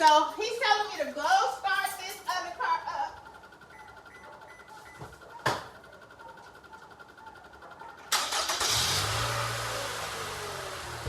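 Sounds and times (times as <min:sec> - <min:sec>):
car engine starting and running: 0:08.1 - 0:11.0.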